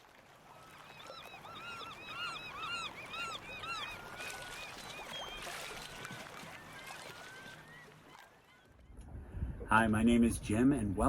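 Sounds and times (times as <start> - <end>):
birds calling: 0.6 - 9.0.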